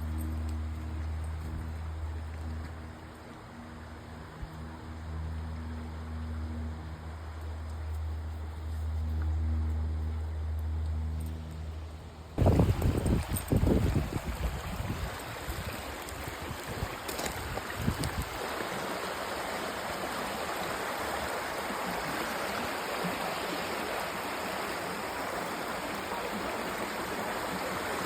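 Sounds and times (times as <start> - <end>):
creek running over rocks: 0.0 - 9.3, 12.4 - 28.0.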